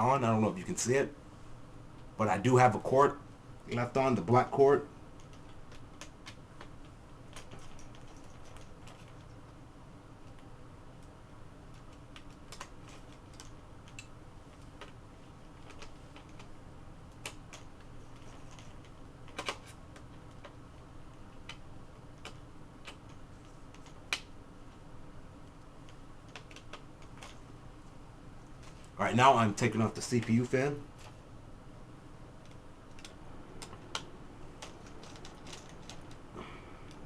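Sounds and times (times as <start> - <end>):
faint steady hum: 0.0 - 37.0
laptop parts being handled: 5.1 - 9.6, 10.2 - 24.8, 32.3 - 37.0.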